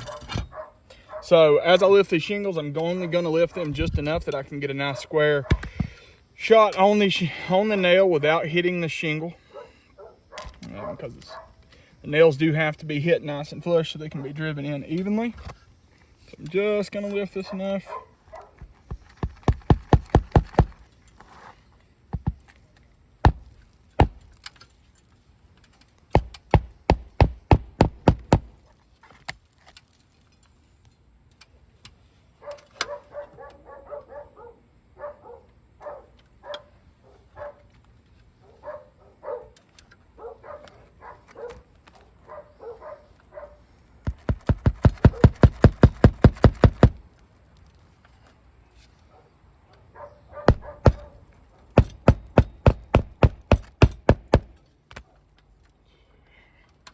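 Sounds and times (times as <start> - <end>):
dog barking: 0.0 - 1.3, 9.5 - 11.6, 17.5 - 18.6, 32.4 - 37.7, 38.4 - 39.6, 40.2 - 41.6, 42.2 - 43.7, 45.1 - 45.4, 49.1 - 51.2
hammer driving nails: 19.0 - 20.8, 26.1 - 28.6, 44.1 - 47.0, 50.5 - 51.1, 51.8 - 54.6.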